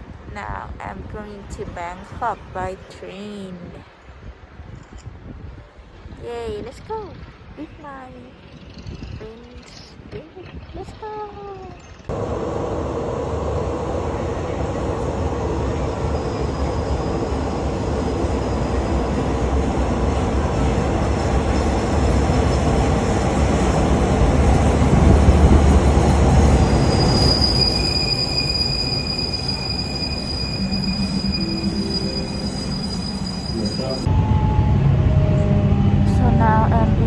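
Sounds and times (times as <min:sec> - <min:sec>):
train wheels rumbling on rails: 0:12.1 - 0:37.0
high steady squeal: 0:25.9 - 0:36.3.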